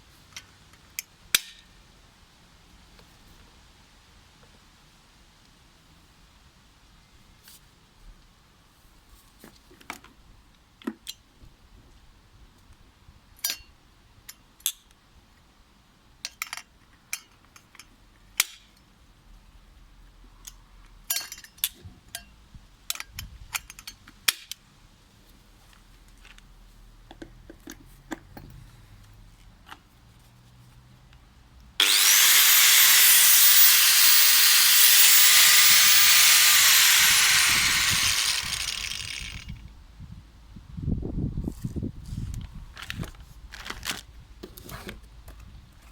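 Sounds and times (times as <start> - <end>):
angle grinder whine: 31.8 - 39.5.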